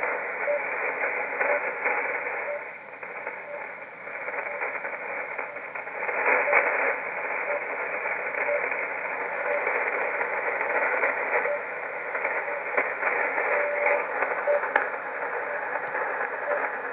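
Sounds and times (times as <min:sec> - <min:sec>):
faint time signal beeps: 0:00.0 - 0:16.9
shortwave radio hiss and static: 0:00.0 - 0:16.9.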